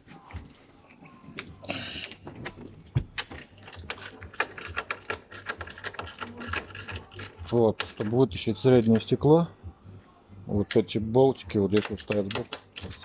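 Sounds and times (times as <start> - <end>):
ratchet wrench clicking: 11.8 - 13.0.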